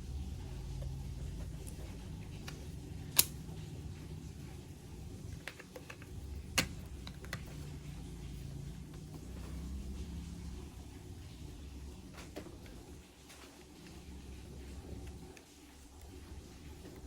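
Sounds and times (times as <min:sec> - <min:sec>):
low steady hum: 0:00.0 - 0:17.0
clicks of parts being handled: 0:02.4 - 0:03.4.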